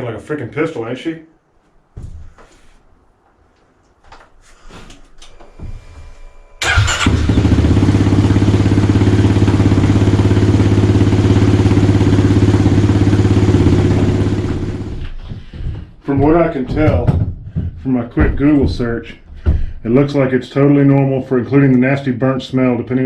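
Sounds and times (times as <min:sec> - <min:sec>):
motorcycle engine idling: 0:06.6 - 0:15.1.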